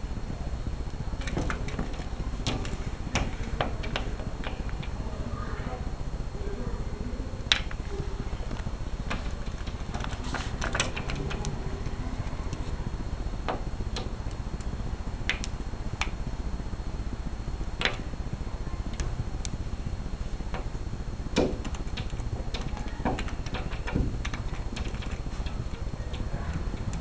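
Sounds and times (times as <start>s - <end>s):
low background hum: 0.0s - 27.0s
cat clicking and tapping: 20.4s - 27.0s.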